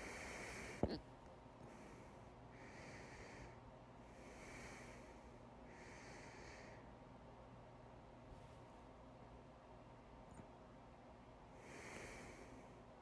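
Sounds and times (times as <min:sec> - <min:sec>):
person breathing softly: 0:00.0 - 0:00.9, 0:01.6 - 0:06.9, 0:11.5 - 0:12.8.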